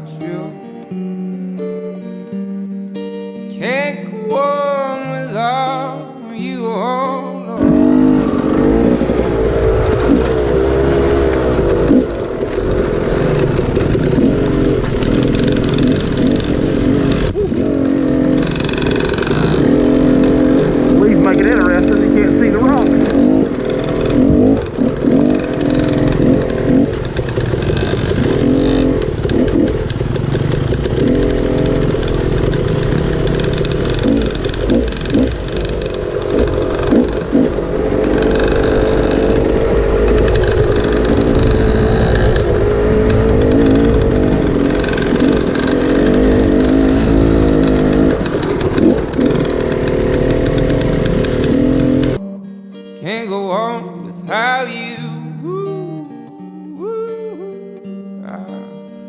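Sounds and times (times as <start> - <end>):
dirt bike engine revving: 7.6 - 52.2.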